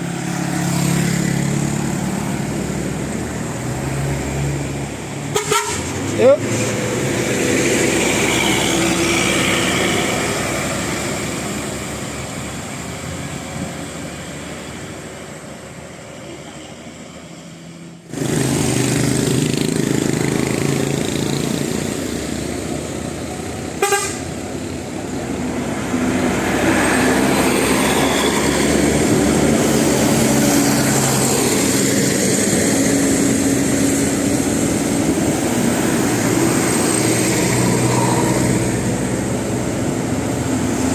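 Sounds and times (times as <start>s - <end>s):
bus engine running: 0.0s - 40.9s
multi-tone horn playing: 5.3s - 5.9s, 23.8s - 24.3s.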